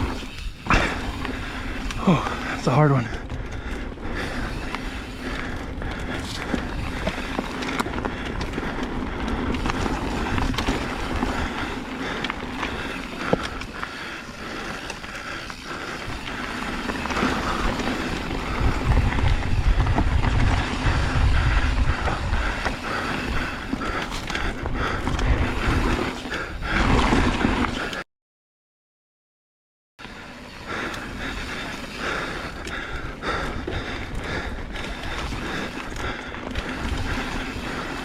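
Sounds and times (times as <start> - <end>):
bike tyres on dirt: 0.0 - 28.0, 30.0 - 38.0
wind buffeting microphone: 16.1 - 27.2.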